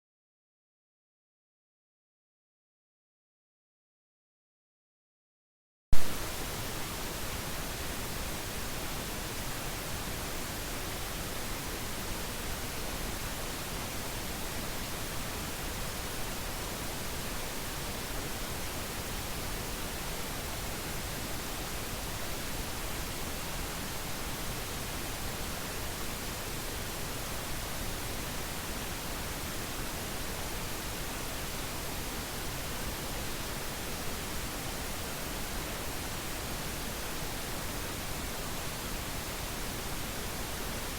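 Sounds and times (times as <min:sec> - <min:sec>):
pink noise hiss: 0:06.0 - 0:40.9.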